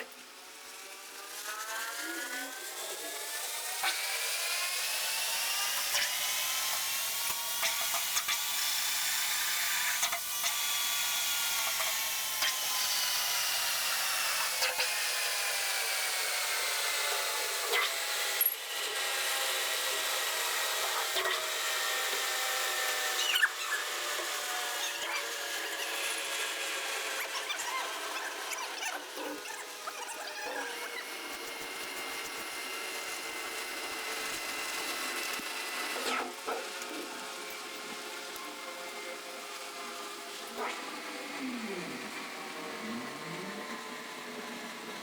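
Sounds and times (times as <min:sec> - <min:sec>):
metal lathe whining: 0:00.5 - 0:45.0.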